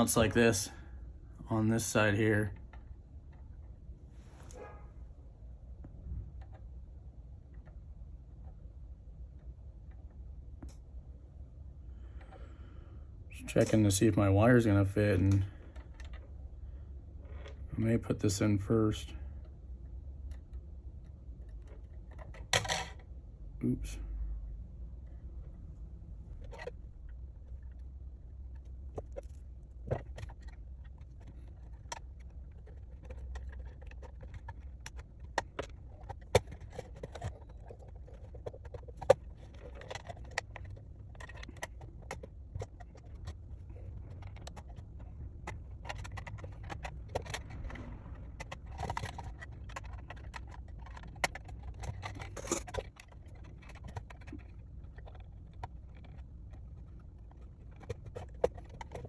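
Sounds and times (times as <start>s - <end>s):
hands handling plastic parts: 25.0s - 59.0s.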